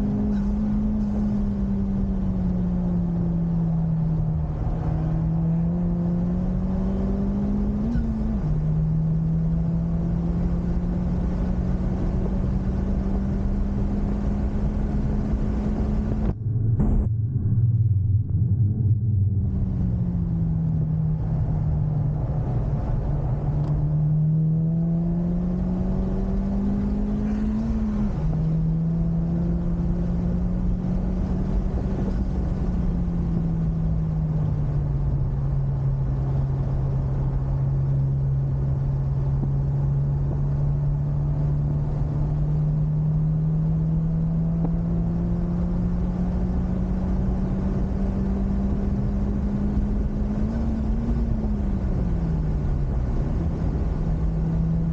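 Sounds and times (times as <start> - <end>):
car engine revving: 0.0 - 54.9
wind and road noise: 0.0 - 54.9.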